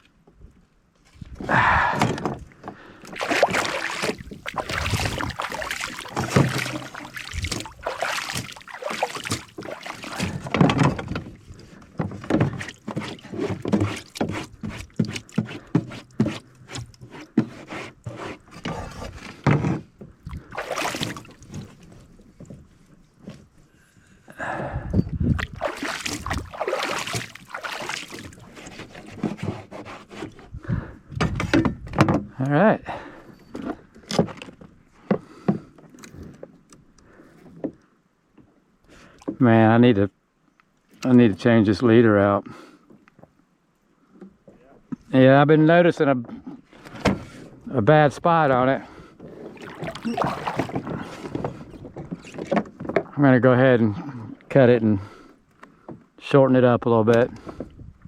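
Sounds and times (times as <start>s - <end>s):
knocks and rustles in kayak: 0.0s - 23.7s, 25.0s - 32.4s, 33.5s - 38.6s, 46.1s - 47.7s, 48.5s - 53.2s, 57.2s - 58.0s
water sloshing against hull: 1.1s - 24.1s, 25.1s - 32.4s, 46.2s - 47.7s, 48.5s - 53.2s, 57.2s - 58.0s.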